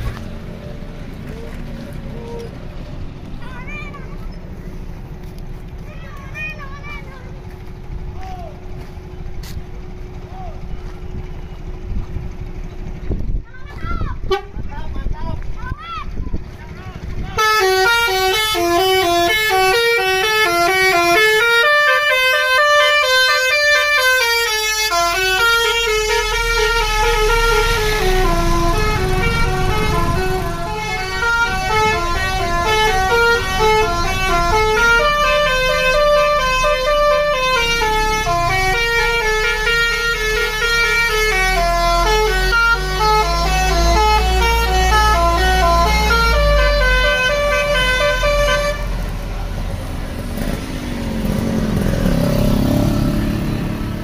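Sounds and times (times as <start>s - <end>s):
bus engine running: 0.0s - 54.0s
musical bus horn playing tune: 14.2s - 14.7s, 17.4s - 49.4s.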